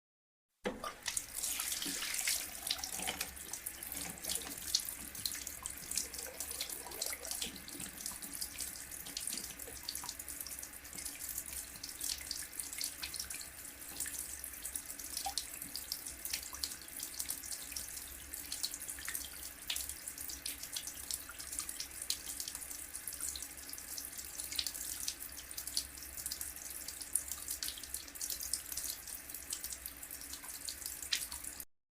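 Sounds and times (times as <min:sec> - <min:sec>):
tap water splashing into basin: 0:00.6 - 0:13.3, 0:29.6 - 0:31.5.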